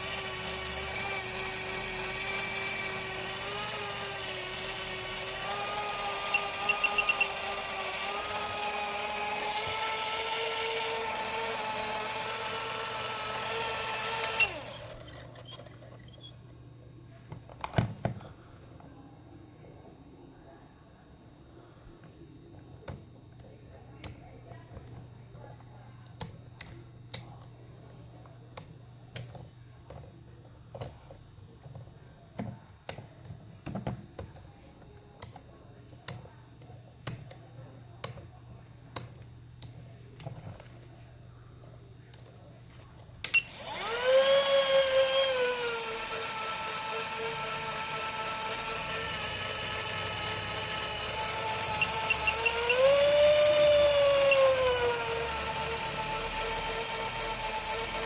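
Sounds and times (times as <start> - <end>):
small electric motor whining: 0.0 - 16.4, 43.4 - 58.0.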